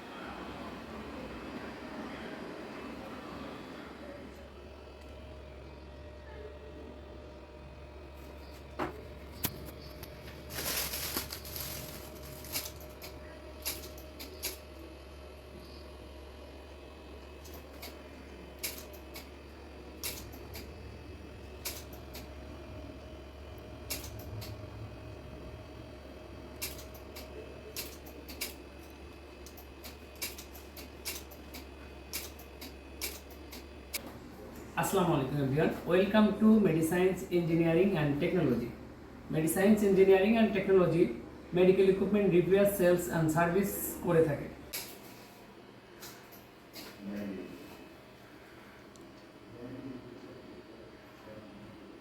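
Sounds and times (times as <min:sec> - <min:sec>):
steady low hum: 0:00.0 - 0:52.0
rustling: 0:09.4 - 0:13.0.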